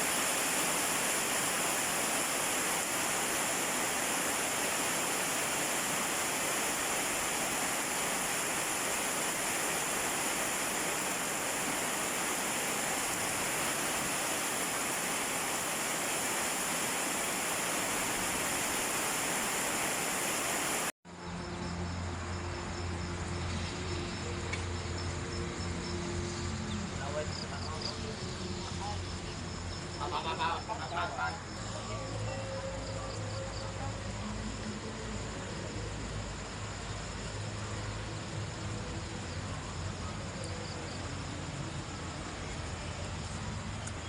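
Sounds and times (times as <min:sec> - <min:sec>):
heavy rain hissing: 0:00.0 - 0:21.0
faint insects chirping: 0:00.0 - 0:44.0.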